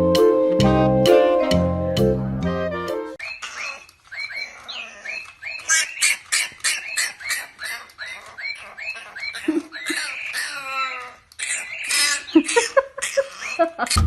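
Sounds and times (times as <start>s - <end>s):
animal squeaky calls: 3.2s - 14.0s.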